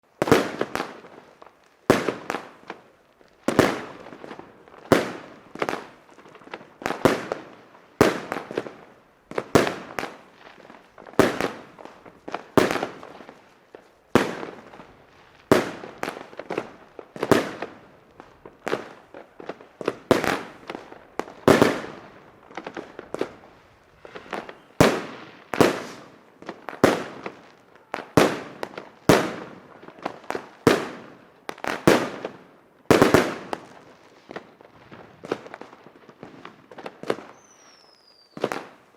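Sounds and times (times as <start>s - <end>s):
firecrackers banging: 14.2s - 33.8s.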